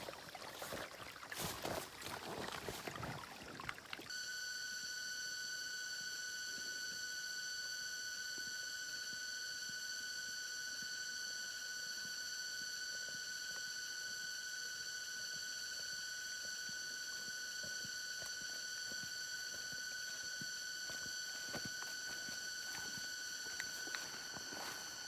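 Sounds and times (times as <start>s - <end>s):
high-pitched hum: 4.1s - 25.0s
faint ticks and rustles: 8.4s - 25.0s.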